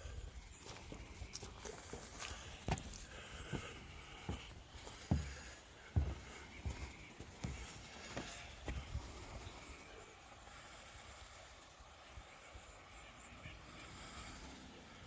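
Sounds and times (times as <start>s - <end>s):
footsteps walking: 0.0s - 9.7s.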